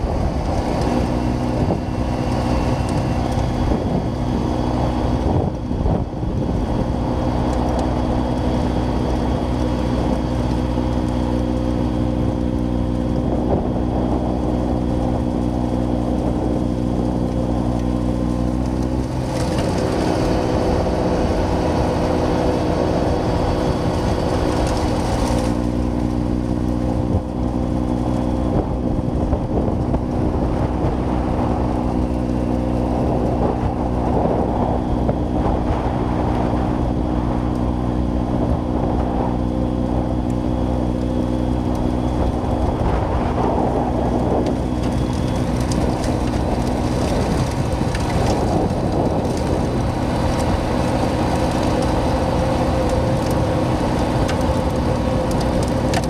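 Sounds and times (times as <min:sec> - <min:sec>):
tractor diesel engine under load: 0:00.0 - 0:56.0
snowblower hiss: 0:30.2 - 0:56.0.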